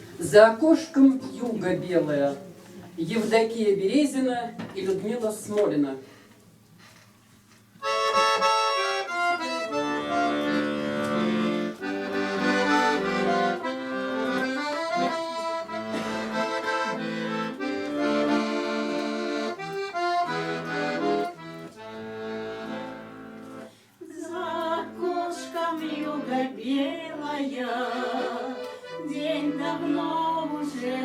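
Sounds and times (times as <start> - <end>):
slow instrumental chords and melody: 7.8 - 23.7.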